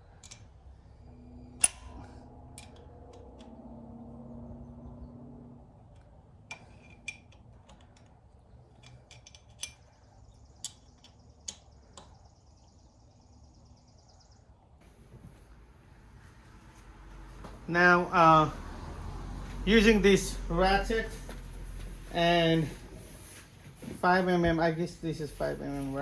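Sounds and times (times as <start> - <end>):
hand tools clicking and tapping: 0.0 - 0.6, 5.9 - 12.2.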